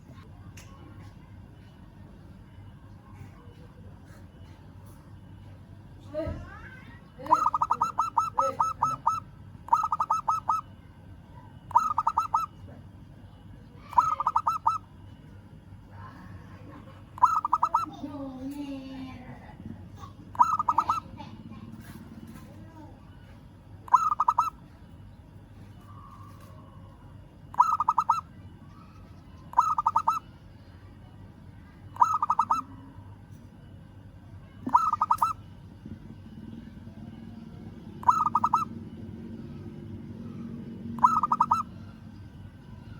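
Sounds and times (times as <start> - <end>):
dove cooing: 7.2 - 10.6, 11.7 - 12.6, 13.9 - 14.8, 17.2 - 18.0, 20.4 - 21.1, 23.9 - 24.5, 27.6 - 28.2, 29.5 - 30.2, 32.0 - 32.7, 34.7 - 35.4, 38.0 - 38.8, 40.9 - 41.7.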